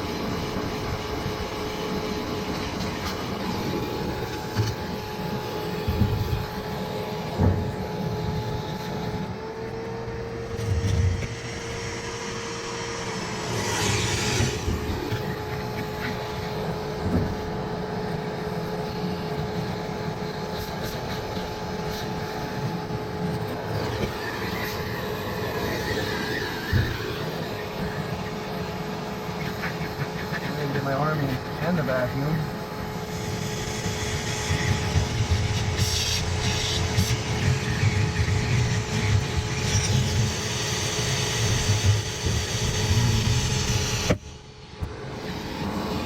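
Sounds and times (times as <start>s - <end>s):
vacuum cleaner running: 0.0s - 46.0s
hissy rush of air: 10.0s - 17.7s.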